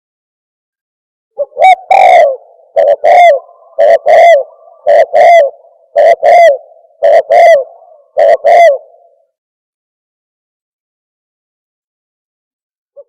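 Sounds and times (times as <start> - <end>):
dove cooing: 1.4 - 9.2.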